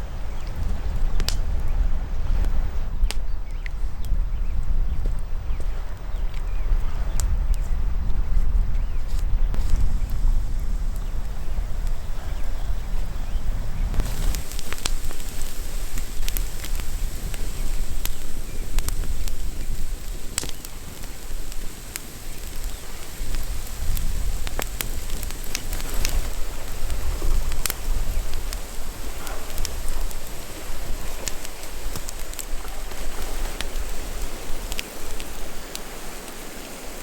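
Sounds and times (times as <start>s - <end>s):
campfire crackling and popping: 0.3s - 6.5s, 9.1s - 37.0s
steady hiss: 9.1s - 37.0s.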